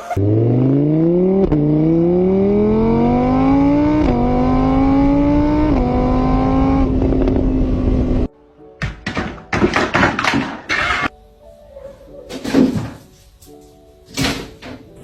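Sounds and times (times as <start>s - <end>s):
car engine accelerating: 0.1s - 8.3s.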